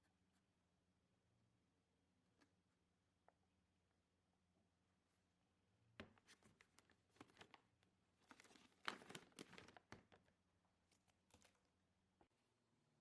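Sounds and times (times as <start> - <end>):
packaging crinkling and tearing: 8.2 - 10.2.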